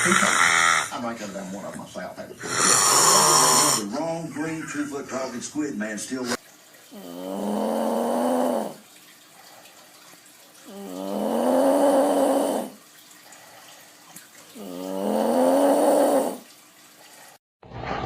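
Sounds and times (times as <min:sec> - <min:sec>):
person snoring: 0:00.0 - 0:00.9, 0:02.4 - 0:03.9, 0:06.9 - 0:08.8, 0:10.7 - 0:12.8, 0:14.6 - 0:16.4.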